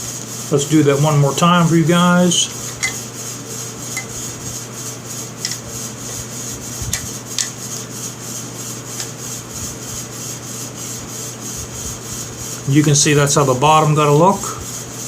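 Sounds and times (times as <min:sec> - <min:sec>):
steady background hum: 0:00.0 - 0:15.0
metal parts rubbing: 0:02.6 - 0:03.1, 0:05.4 - 0:07.6.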